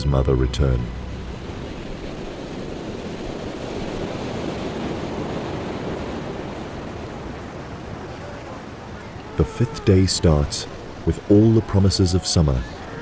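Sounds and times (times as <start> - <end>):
ocean waves washing on shore: 0.0 - 13.0.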